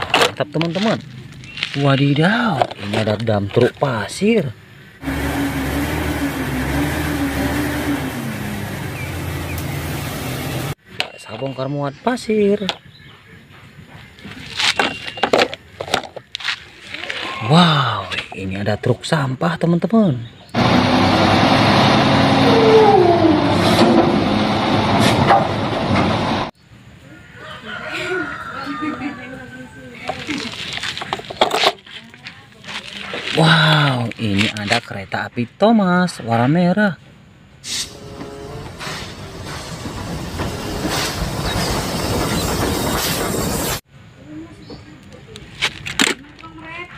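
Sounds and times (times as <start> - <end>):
truck engine running: 5.0 - 10.8, 20.6 - 26.5
sharp hisses: 37.6 - 43.8.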